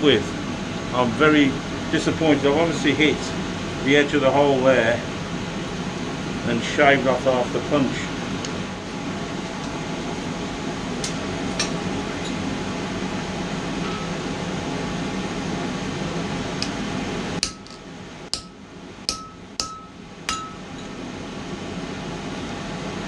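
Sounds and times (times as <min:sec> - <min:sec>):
air blower humming: 0:00.0 - 0:23.0
hammer blows on steel anvil: 0:17.4 - 0:20.9.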